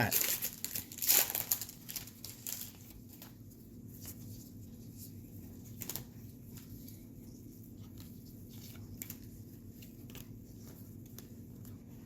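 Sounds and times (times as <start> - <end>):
foil wrapper crinkling: 0.0 - 3.3
cards rustling: 0.0 - 12.0.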